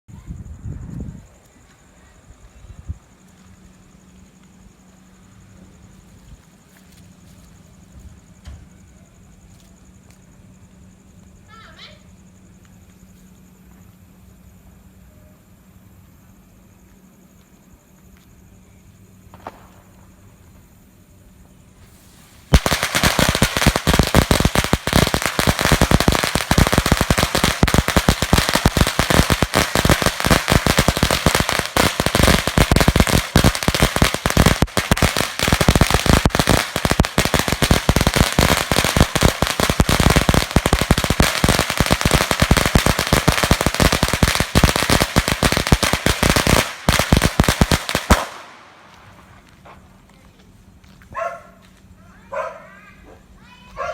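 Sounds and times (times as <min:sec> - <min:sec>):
firecrackers going off: 0:21.7 - 0:50.1.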